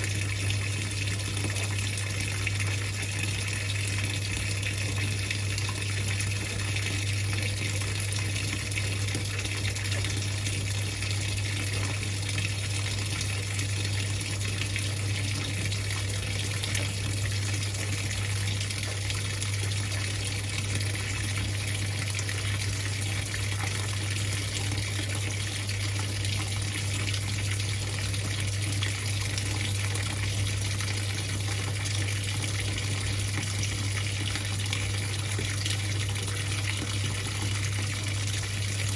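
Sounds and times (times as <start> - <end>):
water gushing into washing machine: 0.0 - 38.9.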